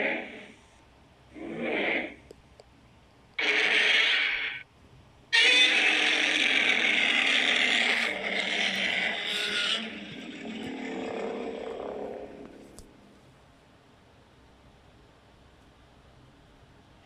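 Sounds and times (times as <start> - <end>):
monster roar: 3.4 - 4.6, 5.4 - 12.8.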